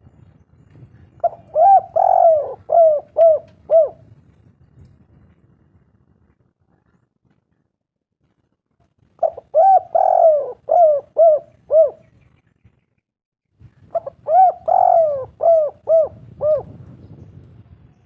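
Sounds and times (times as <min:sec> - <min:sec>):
dove cooing: 0:01.2 - 0:04.1, 0:09.2 - 0:12.1, 0:13.9 - 0:16.9.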